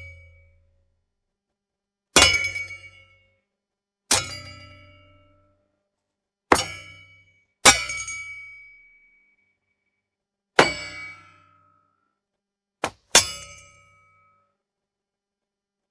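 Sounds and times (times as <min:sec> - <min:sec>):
ringing metal clangs: 0:04.1 - 0:05.2, 0:06.6 - 0:08.7, 0:13.1 - 0:14.2.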